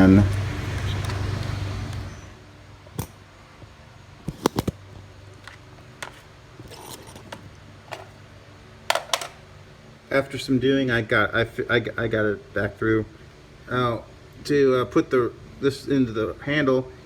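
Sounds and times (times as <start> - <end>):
metal tools clicking on plastic: 5.4 - 8.1, 8.9 - 9.4.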